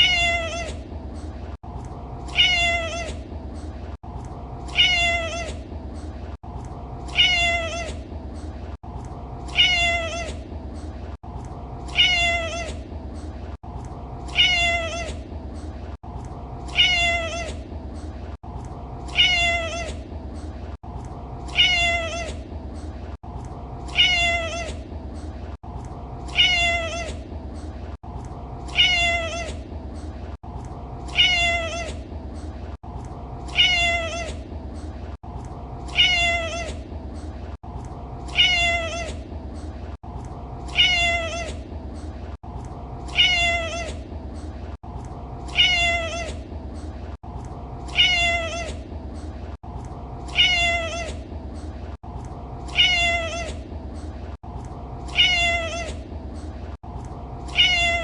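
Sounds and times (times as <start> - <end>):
cat meowing: 0.0 - 0.8, 2.3 - 3.2, 4.7 - 5.6, 7.1 - 8.0, 9.5 - 10.4, 11.9 - 12.8, 14.3 - 15.2, 16.7 - 17.6, 19.1 - 20.0, 21.5 - 22.4, 23.9 - 24.8, 26.3 - 27.2, 28.7 - 29.6, 31.1 - 32.0, 33.5 - 34.4, 35.9 - 36.8, 38.3 - 39.2, 40.7 - 41.6, 43.1 - 44.0, 45.5 - 46.4, 47.9 - 48.8, 50.3 - 51.2, 52.7 - 53.6, 55.1 - 56.0, 57.5 - 58.0.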